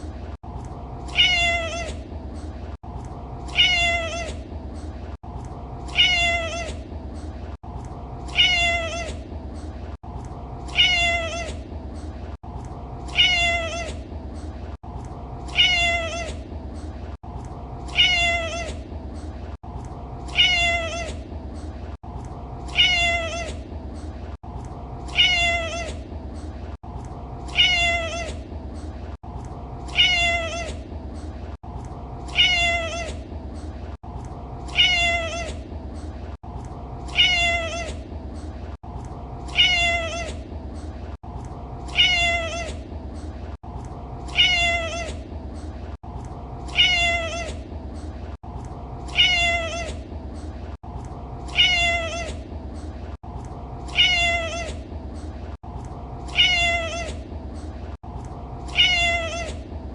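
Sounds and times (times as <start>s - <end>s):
cat meowing: 1.1s - 2.0s, 3.5s - 4.4s, 5.9s - 6.8s, 8.3s - 9.2s, 10.7s - 11.6s, 13.1s - 14.0s, 15.5s - 16.4s, 17.9s - 18.8s, 20.3s - 21.2s, 22.7s - 23.6s, 25.1s - 26.0s, 27.5s - 28.4s, 29.9s - 30.8s, 32.3s - 33.2s, 34.7s - 35.6s, 37.1s - 38.0s, 39.5s - 40.4s, 41.9s - 42.8s, 44.3s - 45.2s, 46.7s - 47.6s, 49.1s - 50.0s, 51.5s - 52.4s, 53.9s - 54.8s, 56.3s - 57.2s, 58.7s - 59.6s.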